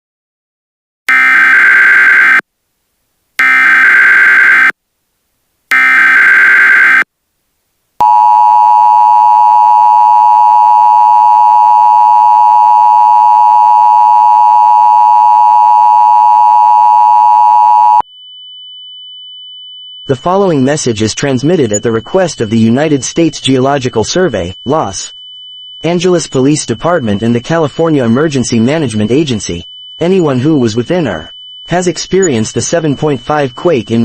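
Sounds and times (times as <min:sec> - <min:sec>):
data bursts: 0:01.1 - 0:02.4, 0:03.4 - 0:04.7, 0:05.7 - 0:07.0, 0:20.1 - 0:34.0
two-tone alert buzz: 0:01.1 - 0:02.4, 0:03.4 - 0:04.7, 0:05.7 - 0:07.0.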